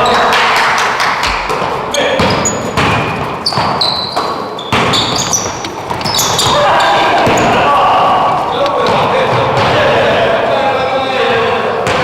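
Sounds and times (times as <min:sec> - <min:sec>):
basketball bouncing on court: 0:01.2 - 0:10.3
shoe squeaks: 0:01.9 - 0:09.1.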